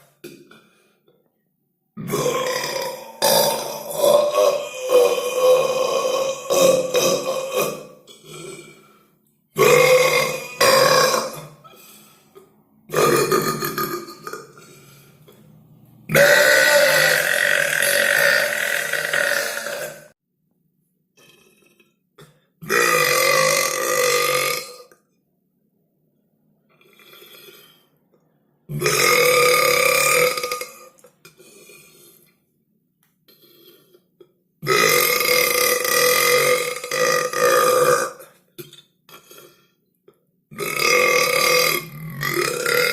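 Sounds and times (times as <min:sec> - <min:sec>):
person burping: 0:00.0 - 0:01.0, 0:02.0 - 0:15.4, 0:16.1 - 0:20.2, 0:21.2 - 0:25.0, 0:28.7 - 0:32.4, 0:33.3 - 0:39.8, 0:40.5 - 0:42.9.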